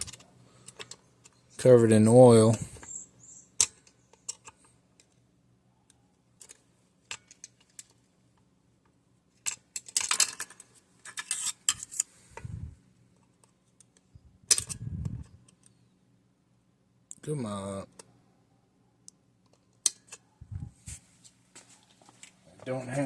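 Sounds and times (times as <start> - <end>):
metal tool clicking and scraping: 11.1 - 12.1.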